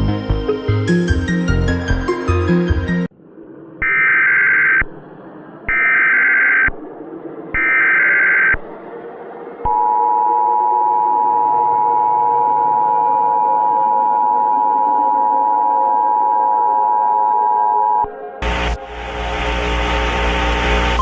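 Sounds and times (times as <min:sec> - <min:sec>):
faint hiss: 0:18.4 - 0:21.0
warbling data tones: 0:18.4 - 0:21.0.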